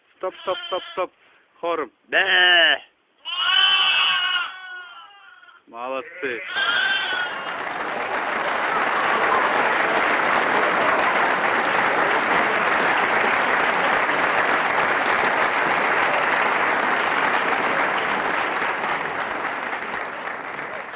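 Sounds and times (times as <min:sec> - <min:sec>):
applause: 0:06.5 - 0:20.9.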